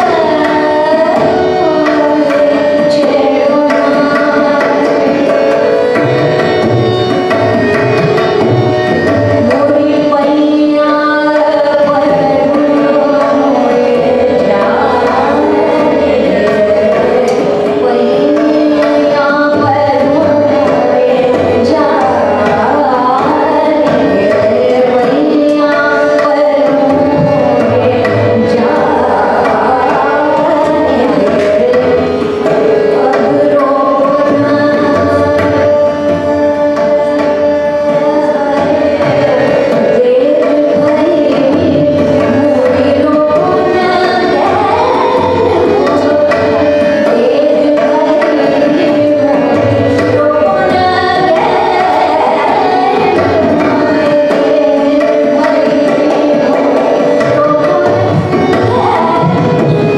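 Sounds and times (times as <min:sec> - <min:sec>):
tabla rhythm: 0:00.0 - 0:59.9
woman singing: 0:00.0 - 0:59.9.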